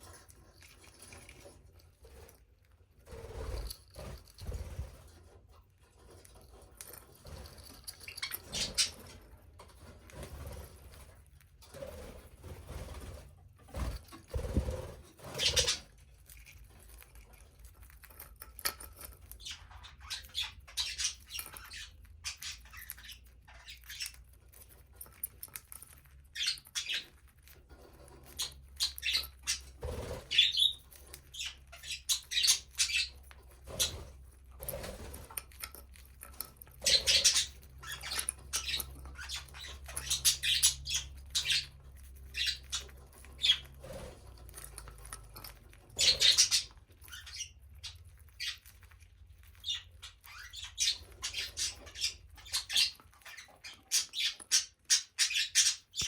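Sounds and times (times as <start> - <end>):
budgerigars chirping: 8.0 - 9.2, 14.4 - 15.9, 19.4 - 24.3, 26.3 - 27.2, 28.4 - 34.1, 36.8 - 44.0, 45.9 - 48.8, 49.6 - 56.0.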